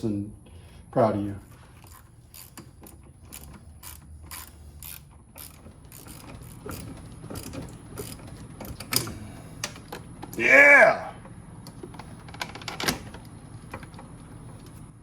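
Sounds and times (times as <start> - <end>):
ratchet wrench clicking: 1.8 - 9.1.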